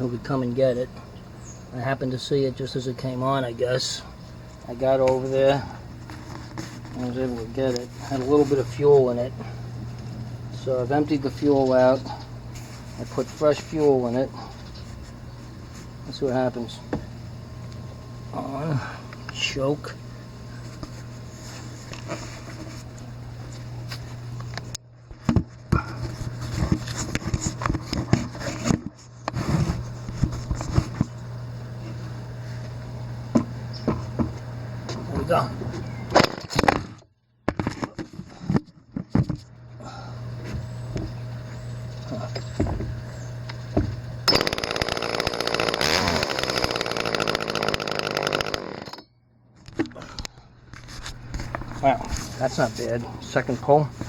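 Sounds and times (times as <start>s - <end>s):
steady low hum: 0.0s - 54.0s
chainsaw being handled: 44.3s - 49.0s.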